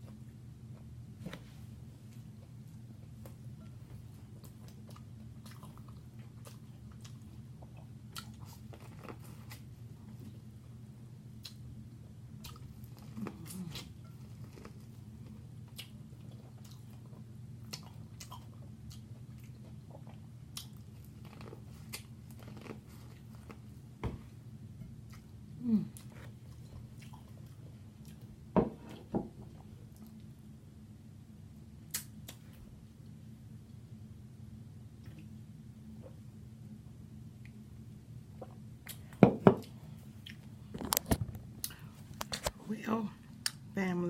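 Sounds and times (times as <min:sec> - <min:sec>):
steady low hum: 0:00.0 - 0:44.0
person chewing food: 0:02.0 - 0:10.6, 0:11.3 - 0:30.4, 0:38.2 - 0:42.5.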